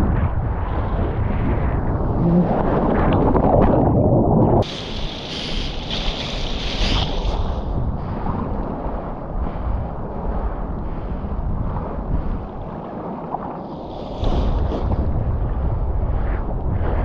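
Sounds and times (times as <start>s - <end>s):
heavy low rumble: 0.0s - 4.7s
wind buffeting microphone: 0.0s - 17.0s
rushing water: 2.2s - 8.8s.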